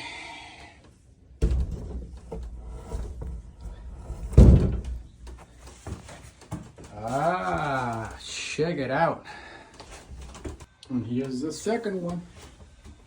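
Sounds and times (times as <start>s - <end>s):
heavy weight plate thud: 2.8s - 5.1s.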